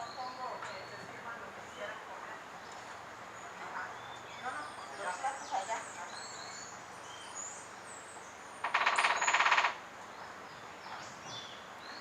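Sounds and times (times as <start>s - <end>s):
woodpecker drumming: 8.6s - 9.8s.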